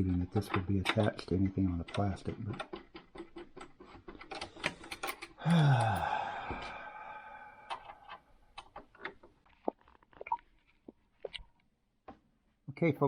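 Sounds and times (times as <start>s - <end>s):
plastic parts clicking and tapping: 0.0s - 5.4s.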